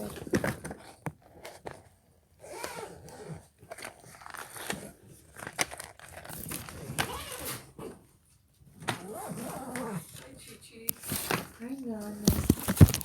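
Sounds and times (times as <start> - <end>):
packaging crinkling: 12.2 - 13.0.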